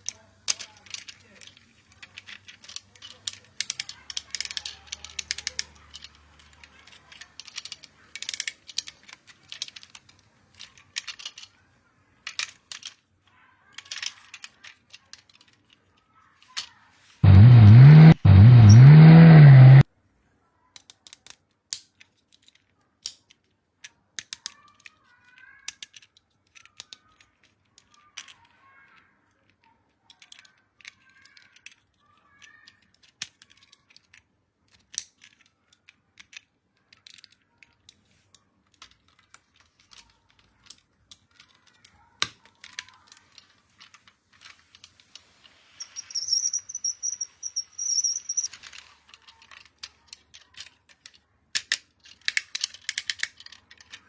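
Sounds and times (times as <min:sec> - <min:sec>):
toy electronic siren effect: 0:17.2 - 0:19.8.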